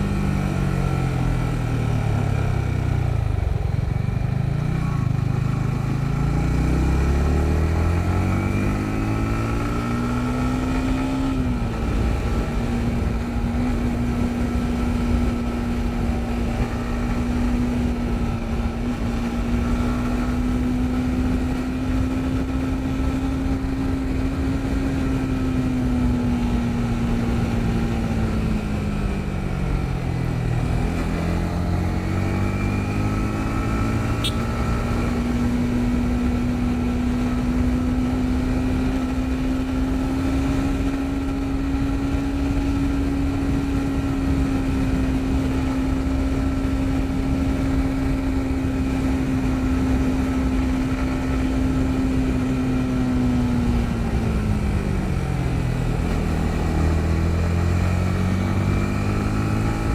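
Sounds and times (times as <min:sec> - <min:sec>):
motorcycle engine running: 0:00.0 - 0:59.9.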